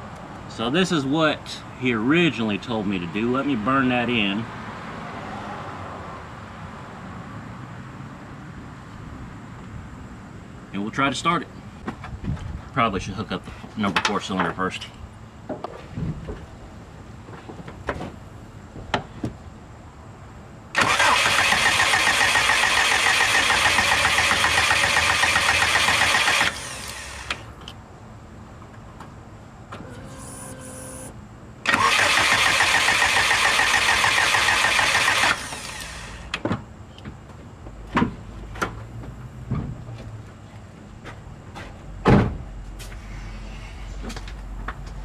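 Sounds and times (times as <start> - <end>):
car engine cranking on starter: 20.7 - 27.5, 31.6 - 36.4.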